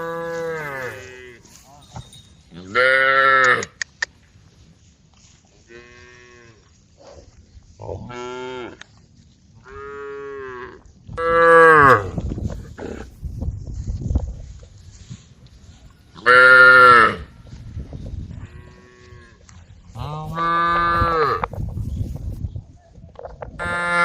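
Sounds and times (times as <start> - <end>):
cows mooing: 0.0 - 1.5, 20.0 - 21.5.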